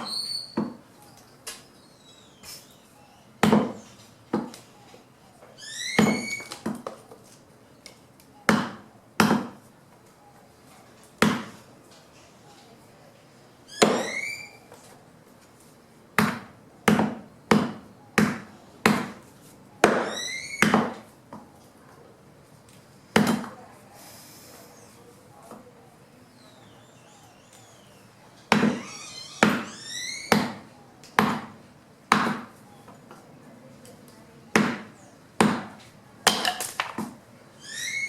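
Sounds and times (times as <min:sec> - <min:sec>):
short rising squeak: 0:00.0 - 0:00.6, 0:05.6 - 0:06.5, 0:13.7 - 0:14.7, 0:20.0 - 0:20.7, 0:28.7 - 0:30.5, 0:37.6 - 0:38.0
sharp strikes on wood: 0:03.4 - 0:04.5, 0:08.5 - 0:09.6, 0:11.2 - 0:11.6, 0:16.2 - 0:19.2, 0:23.1 - 0:23.5, 0:28.5 - 0:28.8, 0:30.3 - 0:30.6, 0:31.2 - 0:32.6, 0:34.5 - 0:37.2.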